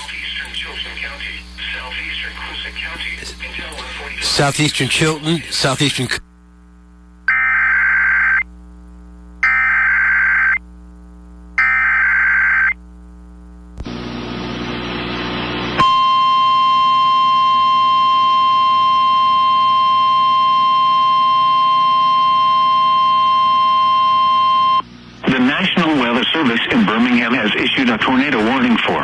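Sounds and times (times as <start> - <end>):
static hiss: 0.0 - 6.2
steady warning alarm tone: 15.8 - 24.8.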